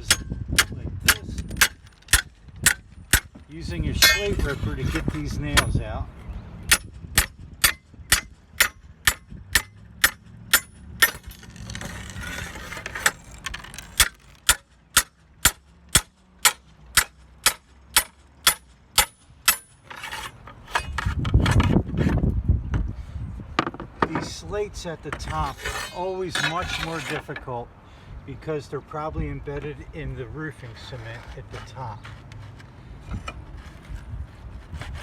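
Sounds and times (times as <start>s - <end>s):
hammer blows on metal ripper: 0.0s - 5.9s
scraping and rumbling: 0.0s - 6.0s, 10.4s - 14.5s, 19.8s - 22.4s, 25.1s - 27.4s, 30.5s - 35.0s.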